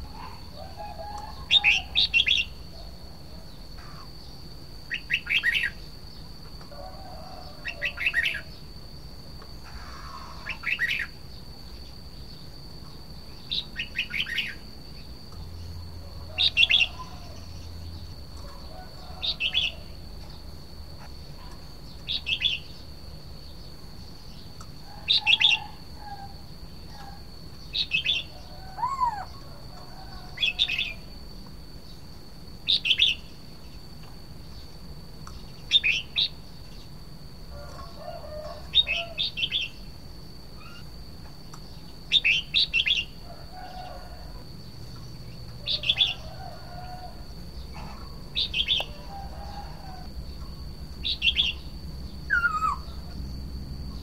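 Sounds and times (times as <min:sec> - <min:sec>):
bird singing bright phrases: 0:04.0 - 0:06.3, 0:10.4 - 0:12.5, 0:13.3 - 0:15.8, 0:21.0 - 0:25.7, 0:26.9 - 0:29.4, 0:47.6 - 0:49.0, 0:51.1 - 0:53.1.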